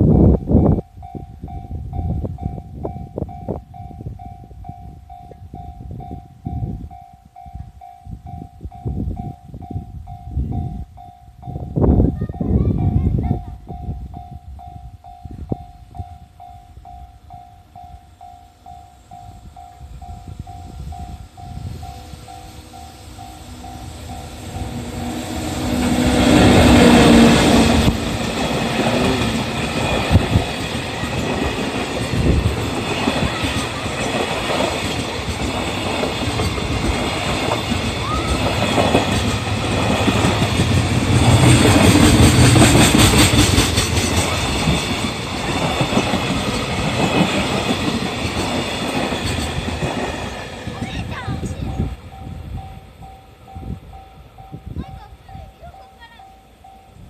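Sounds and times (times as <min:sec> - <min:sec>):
freight train passing: 0:00.0 - 0:57.0
level-crossing bell ringing: 0:12.4 - 0:26.3, 0:50.8 - 0:57.0
wheels clacking over rail joints: 0:23.2 - 0:51.5.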